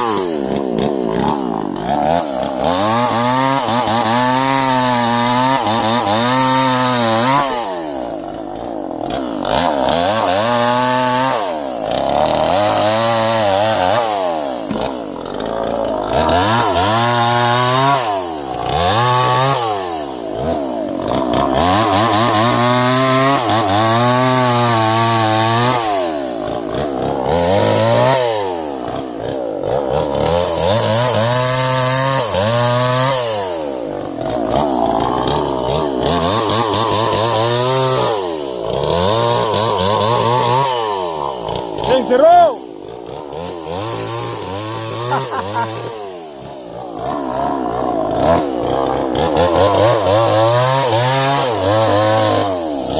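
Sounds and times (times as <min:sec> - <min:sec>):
chainsaw cutting stems: 0:00.0 - 0:52.9.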